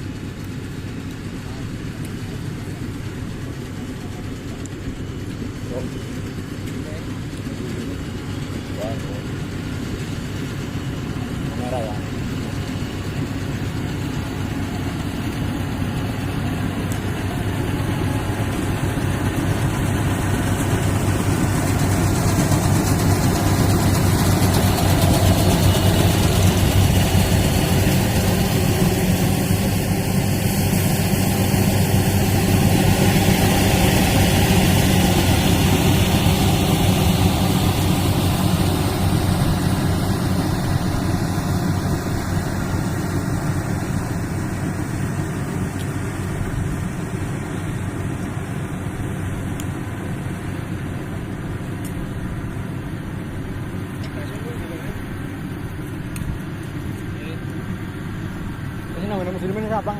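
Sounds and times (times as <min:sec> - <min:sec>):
combine harvester engine drone: 0:00.0 - 0:59.9.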